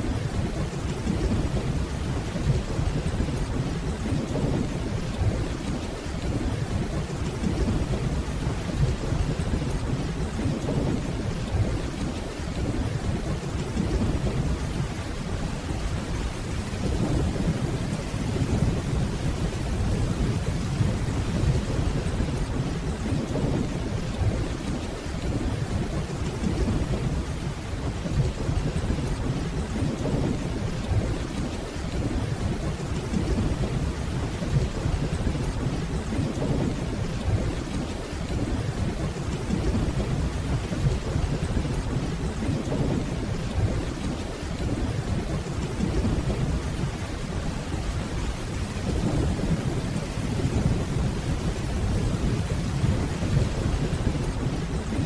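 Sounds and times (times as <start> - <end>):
steady rainfall: 0.0 - 55.0
distant thunder rumble: 28.1 - 55.0.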